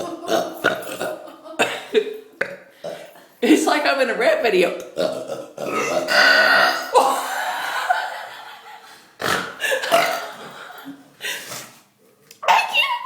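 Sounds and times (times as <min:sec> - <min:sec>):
person belching loudly: 0:00.0 - 0:01.7, 0:04.8 - 0:07.1, 0:09.2 - 0:10.4.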